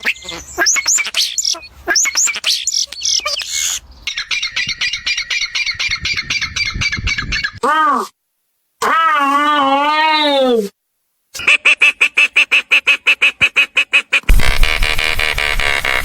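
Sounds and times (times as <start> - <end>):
birds squawking and chattering: 0.0 - 7.6.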